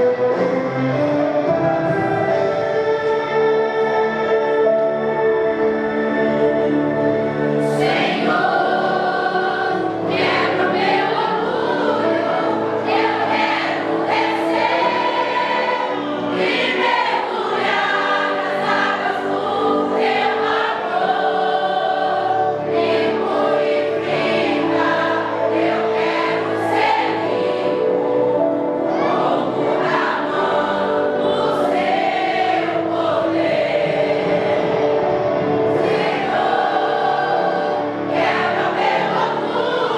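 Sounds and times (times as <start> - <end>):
instrumental accompaniment: 0.0 - 39.9
vocal group singing gospel: 7.6 - 35.0, 35.7 - 39.9.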